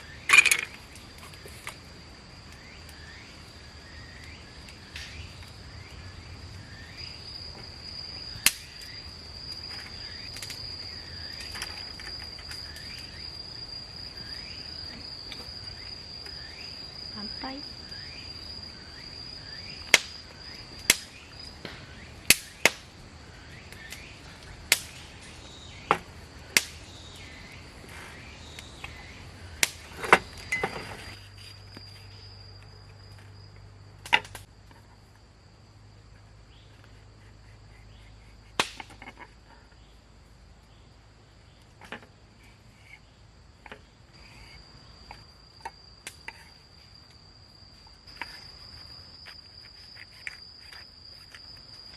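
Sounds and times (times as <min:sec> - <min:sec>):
crickets chirring: 0:00.0 - 0:51.9
campfire wood popping: 0:00.1 - 0:17.1, 0:17.8 - 0:31.2, 0:33.9 - 0:34.8, 0:38.4 - 0:39.4.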